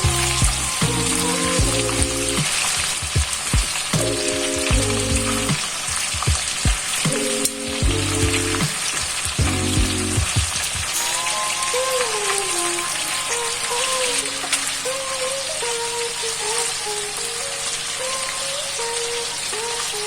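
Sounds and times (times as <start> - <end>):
background music with a beat: 0.0 - 15.8
food sizzling: 0.0 - 20.0.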